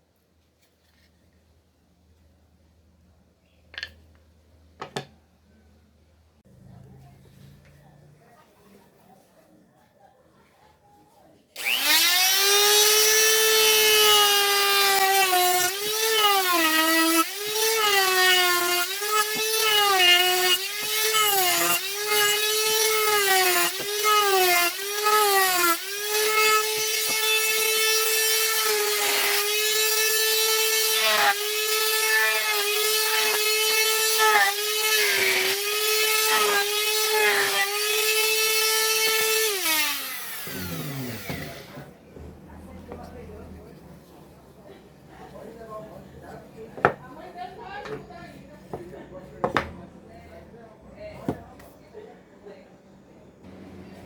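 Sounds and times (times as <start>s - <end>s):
power tool motor whining: 11.6s - 41.9s.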